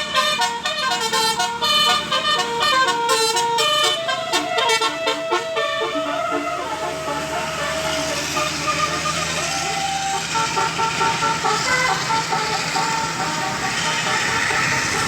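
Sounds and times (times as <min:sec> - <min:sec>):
low engine hum: 0:00.0 - 0:15.0
musical bus air horn: 0:00.0 - 0:15.0.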